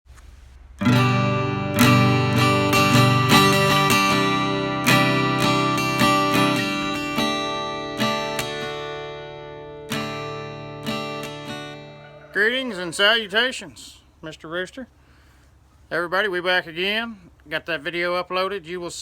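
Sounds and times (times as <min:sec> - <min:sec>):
acoustic guitar chords strummed: 0:00.6 - 0:13.4.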